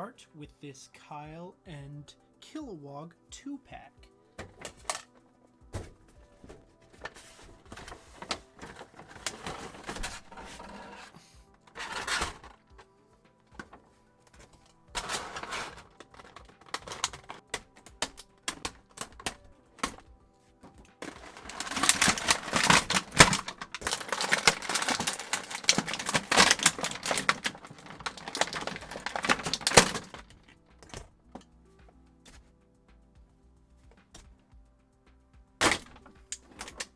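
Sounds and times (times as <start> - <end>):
cardboard and plastic clicks: 4.4 - 5.2, 5.8 - 12.9, 13.5 - 31.5, 35.6 - 36.9
plastic crinkling and rustling: 4.4 - 5.2, 5.8 - 12.9, 13.5 - 31.4, 35.6 - 36.9.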